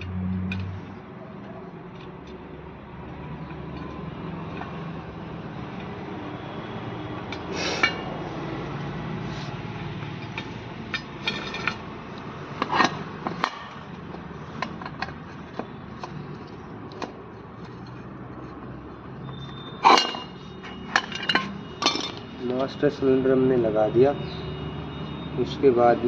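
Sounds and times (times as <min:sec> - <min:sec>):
metal clank with ring: 0:07.8 - 0:08.1, 0:19.3 - 0:22.4.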